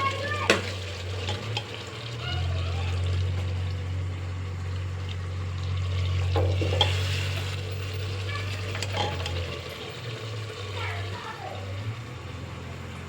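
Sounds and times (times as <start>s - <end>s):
chicken frying in a pan: 0.0s - 13.0s
spoon scraping a pan: 0.6s - 1.8s, 6.4s - 9.6s.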